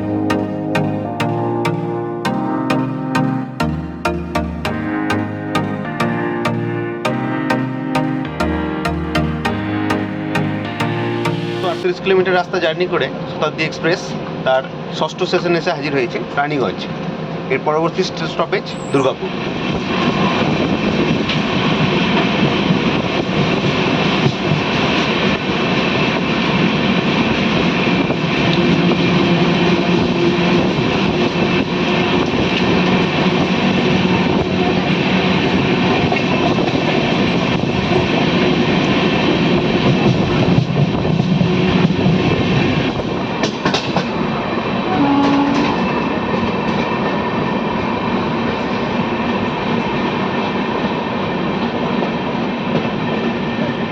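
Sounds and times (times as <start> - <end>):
train rumbling on rails: 11.9 - 53.9
train wheel clatter: 43.4 - 44.2.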